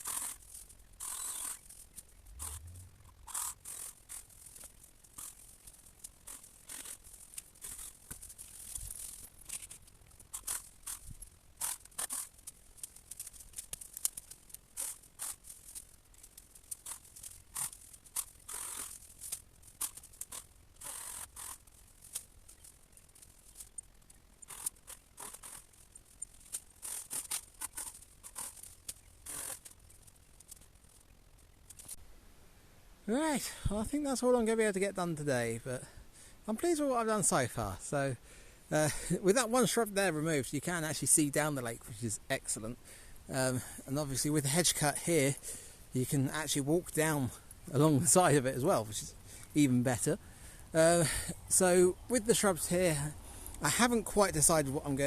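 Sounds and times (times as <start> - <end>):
sharp snips and cracks: 0.0 - 32.0
shrub branches rustling: 0.0 - 32.0, 33.1 - 55.0.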